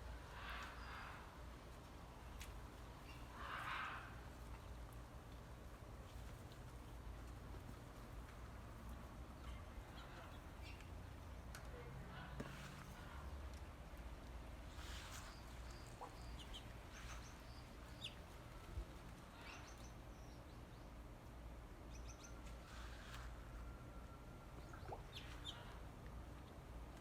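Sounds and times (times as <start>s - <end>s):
birds chirping: 14.6s - 21.2s, 24.5s - 26.7s.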